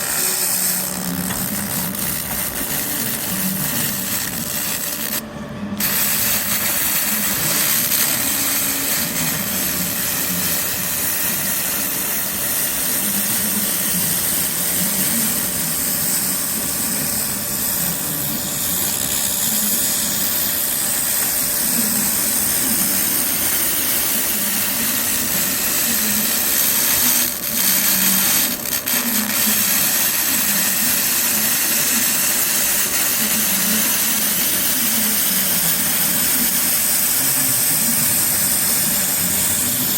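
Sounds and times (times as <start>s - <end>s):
laser cleaning machine hiss: 0.0s - 39.9s.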